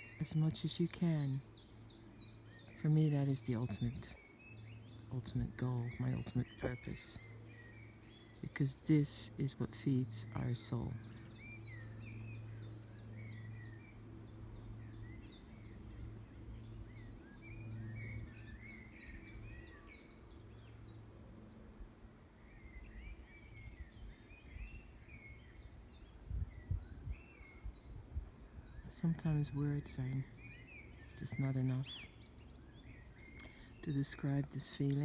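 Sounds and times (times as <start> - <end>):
birds singing: 0.0 - 35.0
faint low drone: 0.0 - 35.0
wind buffeting microphone: 23.6 - 29.0.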